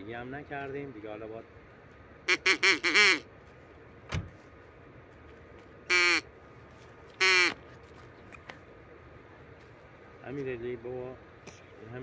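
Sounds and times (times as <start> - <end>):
duck call quacks: 2.3 - 3.2, 5.9 - 6.2, 7.2 - 7.6.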